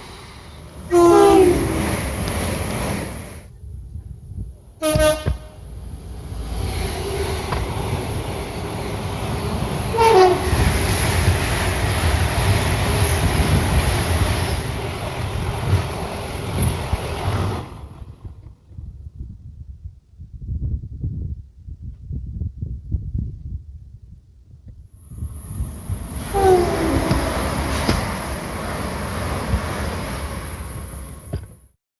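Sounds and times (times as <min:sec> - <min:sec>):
train rumbling past: 0:00.0 - 0:18.5, 0:25.0 - 0:31.8
train horn blast: 0:00.9 - 0:02.3, 0:04.8 - 0:05.6, 0:09.9 - 0:10.8, 0:26.3 - 0:28.1
train wheel clatter: 0:04.8 - 0:18.0, 0:25.4 - 0:31.6.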